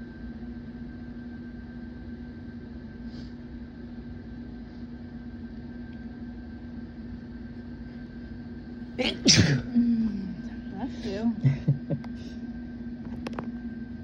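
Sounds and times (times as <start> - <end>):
low room hum: 0.0 - 14.0
person sneezing: 9.0 - 9.7.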